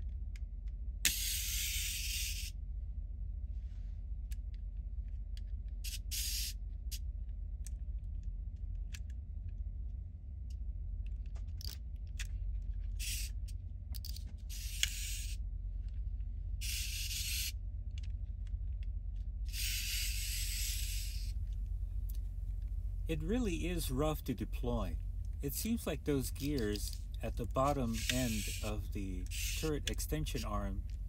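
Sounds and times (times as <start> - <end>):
steady low hum: 0.0 - 31.0
plastic toy clicks and scraping: 1.1 - 2.5, 5.8 - 6.5, 11.4 - 15.4, 16.6 - 18.1, 19.5 - 21.3, 25.5 - 31.0.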